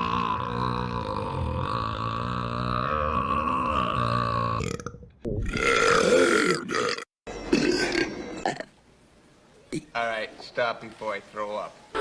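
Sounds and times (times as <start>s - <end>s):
deep belch: 0.0s - 8.7s.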